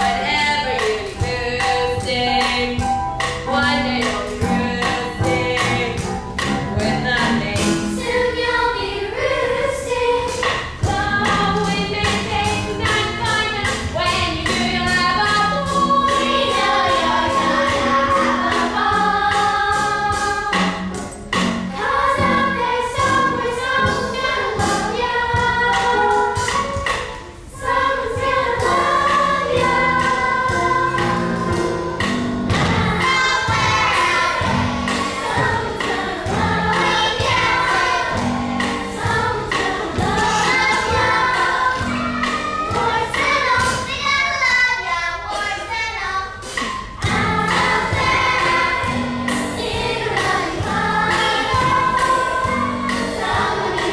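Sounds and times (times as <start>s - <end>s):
backing track with steady beat: 10.0s - 44.0s, 46.3s - 53.9s.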